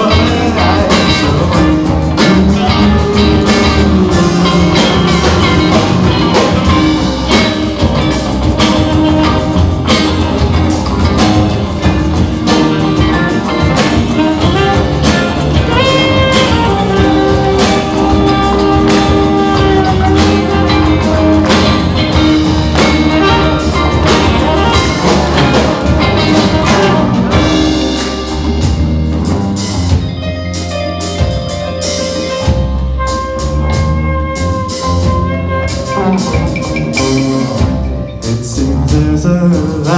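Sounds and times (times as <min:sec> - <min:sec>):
live band playing: 0:00.0 - 0:39.9.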